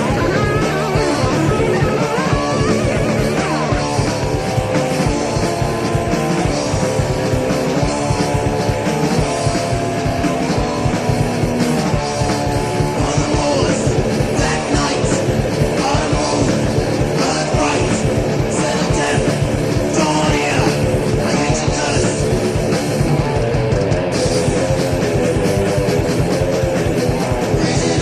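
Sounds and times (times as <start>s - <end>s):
heavy metal music: 0.0s - 28.0s.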